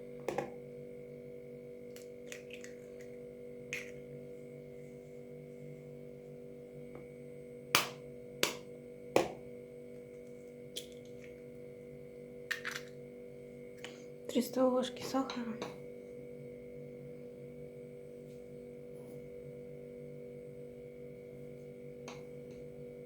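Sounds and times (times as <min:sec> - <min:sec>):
steady low hum: 0:00.0 - 0:23.0
eggs cracking on bowl rim: 0:01.9 - 0:04.0, 0:12.5 - 0:13.0.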